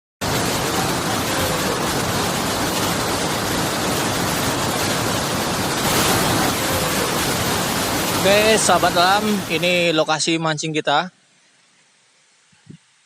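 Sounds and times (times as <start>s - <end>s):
water rushing over a weir: 0.2s - 10.0s.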